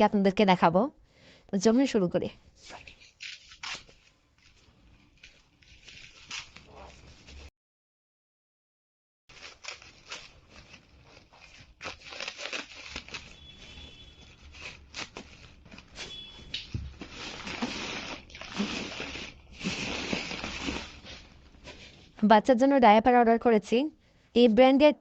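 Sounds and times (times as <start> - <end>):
packaging tearing and crinkling: 3.1 - 7.5, 9.3 - 21.2.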